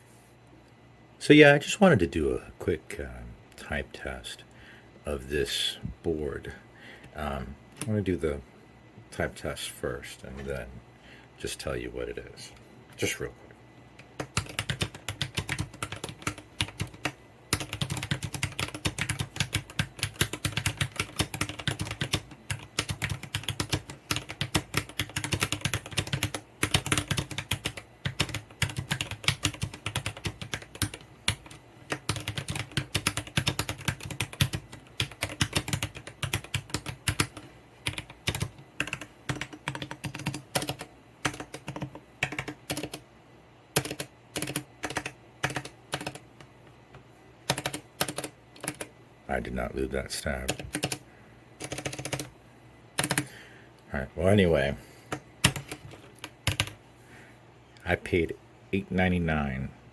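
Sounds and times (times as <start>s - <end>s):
fast mechanical keyboard typing: 14.2s - 43.0s, 43.7s - 46.3s, 47.4s - 48.9s, 50.4s - 51.0s, 51.6s - 52.3s, 53.0s - 53.3s, 55.1s - 56.8s.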